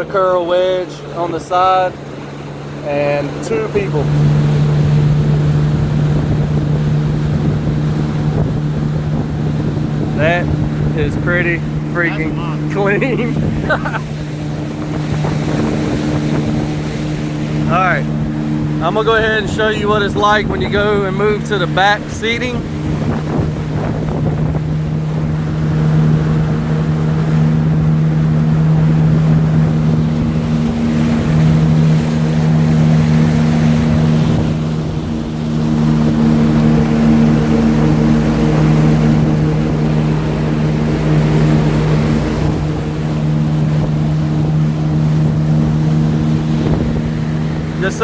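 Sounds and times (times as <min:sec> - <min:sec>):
boat engine droning: 0:00.0 - 0:48.0
rushing water: 0:00.0 - 0:48.0
wind on microphone: 0:00.0 - 0:48.0.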